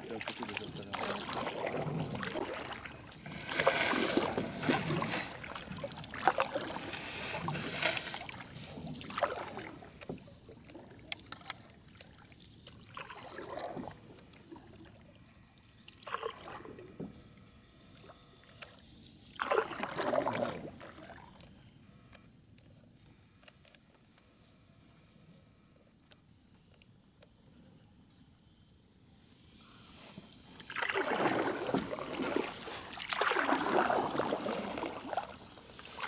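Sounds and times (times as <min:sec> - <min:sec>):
paddles splashing through water: 0:00.0 - 0:15.2, 0:15.8 - 0:17.2, 0:18.1 - 0:21.4, 0:30.2 - 0:36.0.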